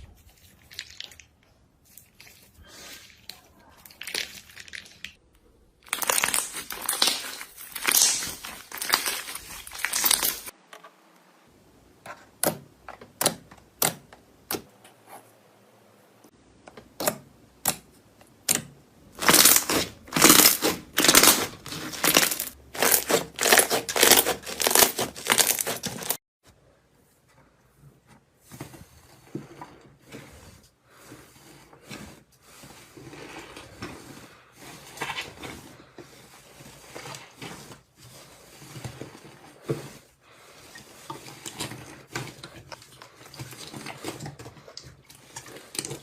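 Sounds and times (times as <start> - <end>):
slime crackling and popping: 5.8 - 10.5, 19.2 - 26.2.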